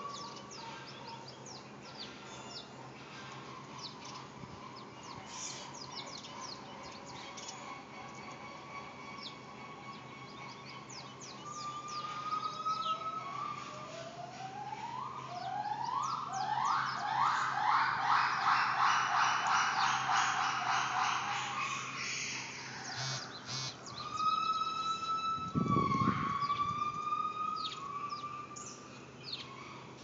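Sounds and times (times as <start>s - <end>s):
small birds chirping: 0.0s - 13.9s, 15.3s - 29.9s
gibbons hooting: 0.0s - 30.0s.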